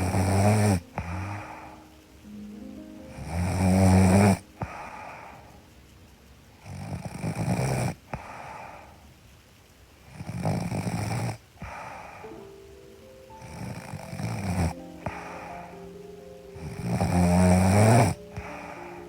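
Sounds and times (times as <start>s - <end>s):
woman snoring: 0.0s - 1.8s, 3.1s - 5.3s, 6.6s - 8.4s, 10.2s - 11.4s, 13.4s - 15.6s, 16.5s - 19.0s
quiet breathing: 0.0s - 19.0s.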